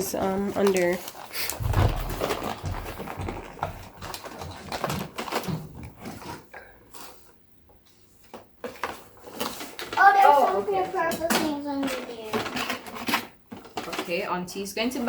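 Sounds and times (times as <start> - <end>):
toys clicking and knocking: 0.0 - 6.2, 8.6 - 14.3.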